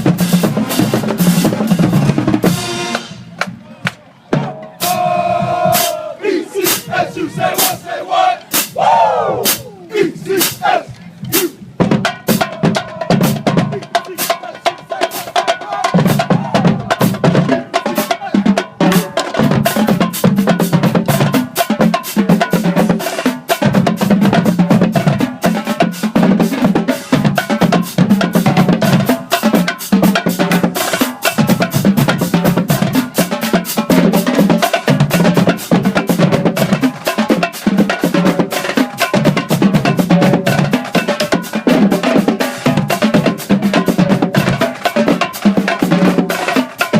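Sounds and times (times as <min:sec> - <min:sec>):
pounding bass drums: 0:00.0 - 0:03.6.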